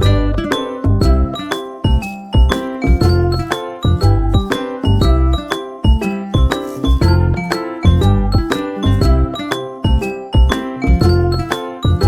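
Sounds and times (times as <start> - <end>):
upbeat music with bell-like notes: 0.0 - 12.0
steady bass beat: 1.9 - 5.5, 6.4 - 10.0, 10.9 - 12.0.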